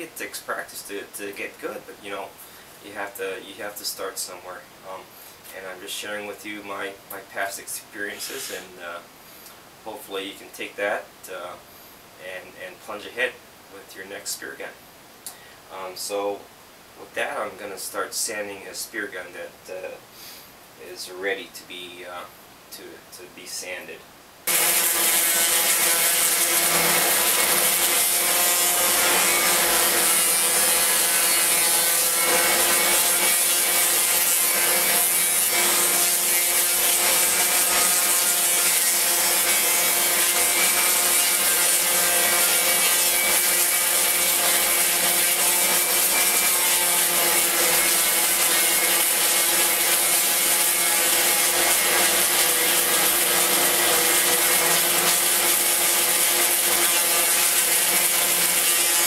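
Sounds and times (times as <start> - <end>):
sandpaper hissing on wood: 8.1 - 8.7, 24.5 - 59.0
electric sander running: 24.5 - 59.0.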